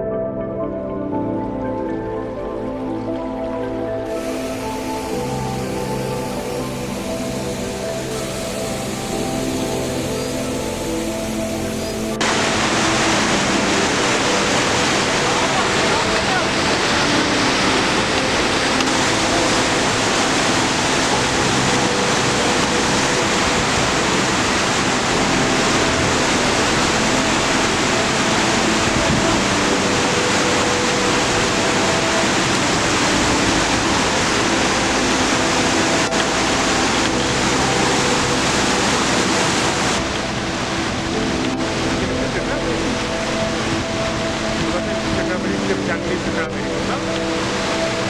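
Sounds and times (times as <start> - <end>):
fast-flowing water rushing: 2.8 - 48.0.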